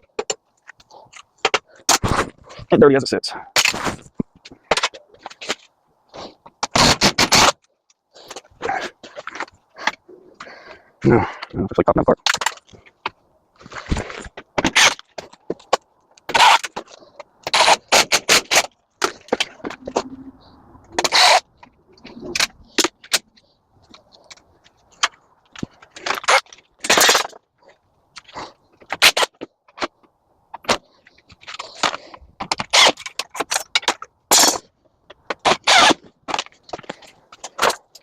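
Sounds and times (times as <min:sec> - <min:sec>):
metal clanks snaps and scrapes: 0:20.9 - 0:29.9, 0:30.5 - 0:38.0.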